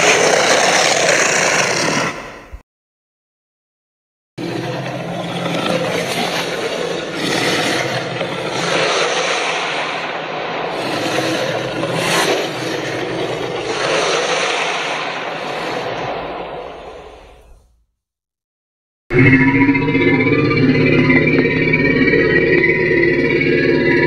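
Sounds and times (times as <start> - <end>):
monster rasping growl: 0.0 - 2.6, 4.4 - 17.5.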